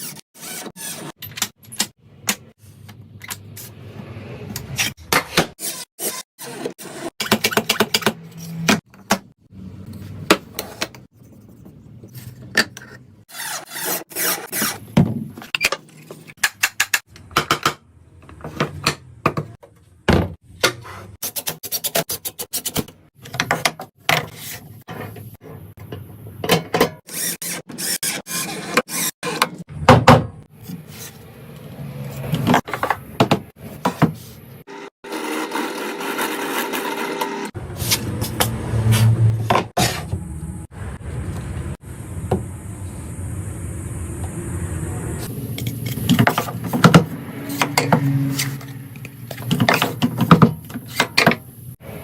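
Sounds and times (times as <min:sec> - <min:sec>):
tools knocking and scraping wood: 0:14.6 - 0:31.1, 0:32.1 - 0:34.3, 0:45.6 - 0:51.5.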